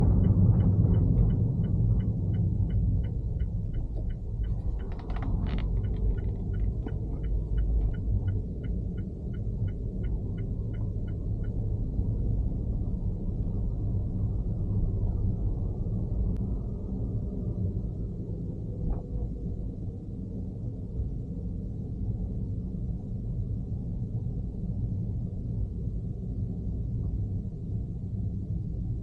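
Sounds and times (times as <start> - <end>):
faint regular ticking: 0.0 - 11.6.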